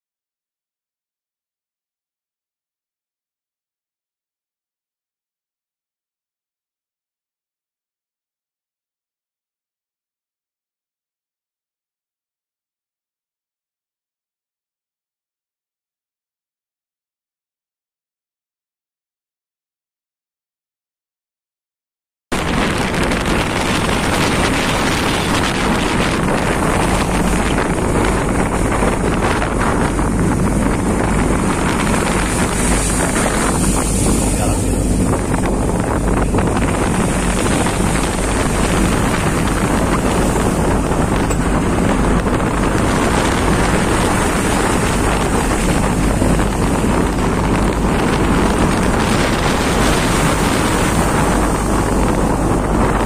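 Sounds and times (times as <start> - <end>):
wind noise on microphone: 22.3 - 53.0
boat engine running: 22.4 - 53.0.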